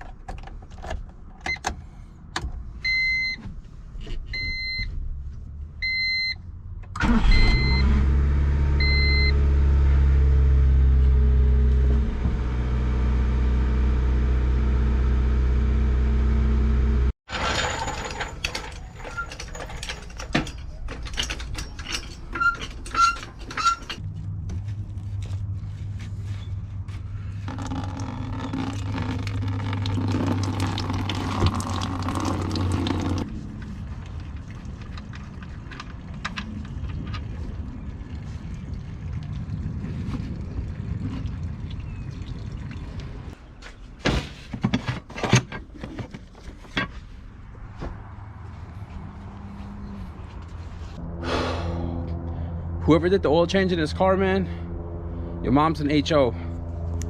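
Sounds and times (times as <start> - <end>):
car engine running: 7.0 - 17.1, 24.0 - 38.7
steady low hum: 49.7 - 57.0.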